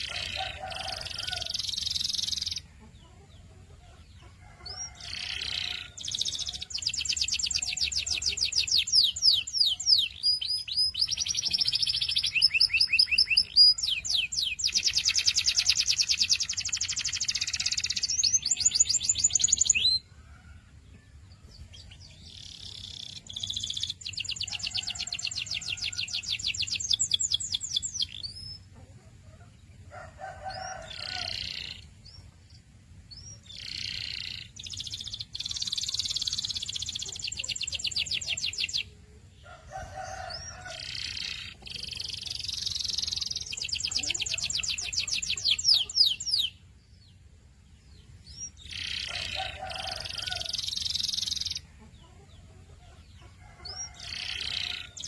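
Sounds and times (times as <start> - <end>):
canary singing trills: 0.0 - 20.3, 21.4 - 55.0.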